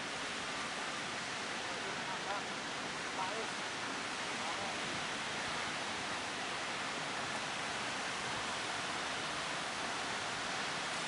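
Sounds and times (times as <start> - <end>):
rough sea water rushing: 0.0 - 11.0.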